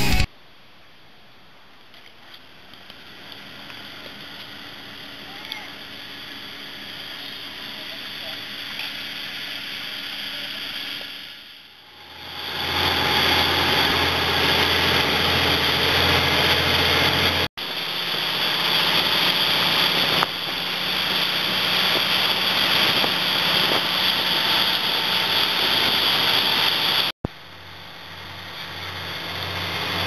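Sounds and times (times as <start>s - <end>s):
boat engine humming: 2.6s - 30.0s
loud rushing noise: 11.8s - 27.1s.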